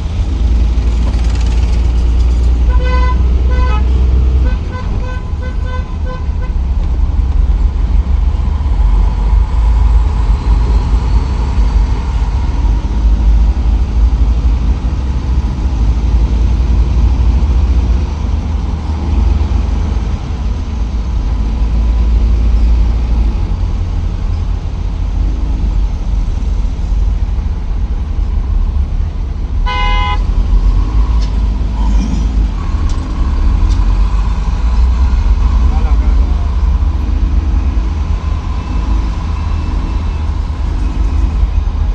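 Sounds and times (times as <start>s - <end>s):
minibus engine rumble in traffic: 0.0s - 41.9s
vehicle horn toot: 2.7s - 6.6s, 29.6s - 30.2s.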